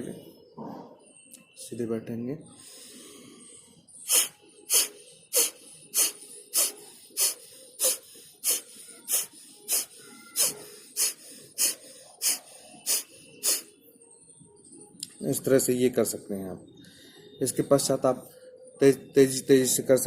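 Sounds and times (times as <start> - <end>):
sharp breaths out through nose: 2.6 - 13.8.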